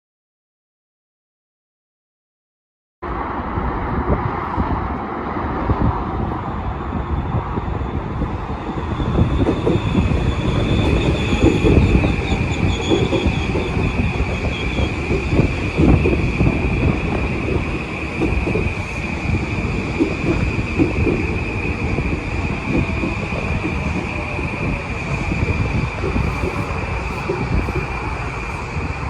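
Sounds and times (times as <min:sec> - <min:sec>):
train rumbling past: 0:03.0 - 0:29.0
high-pitched squeal: 0:06.6 - 0:29.0.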